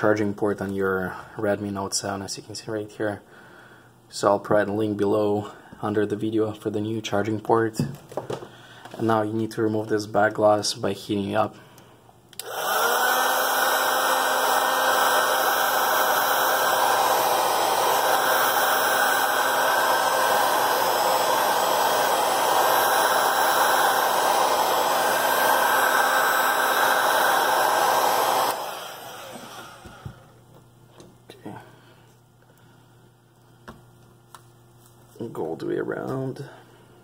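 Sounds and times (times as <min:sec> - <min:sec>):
hot-air blower fan humming: 0:00.0 - 0:37.0.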